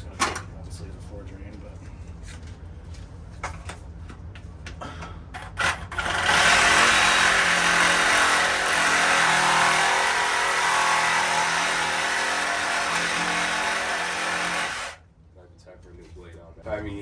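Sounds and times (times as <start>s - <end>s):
power saw cutting: 6.0s - 15.0s.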